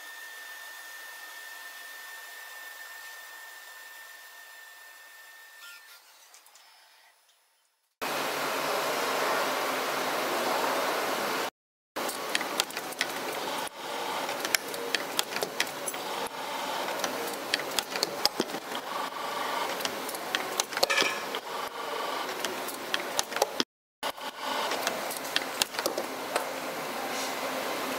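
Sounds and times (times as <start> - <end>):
machine with sharp clicks and knocks: 12.0 - 26.6
factory machinery running: 12.0 - 27.9.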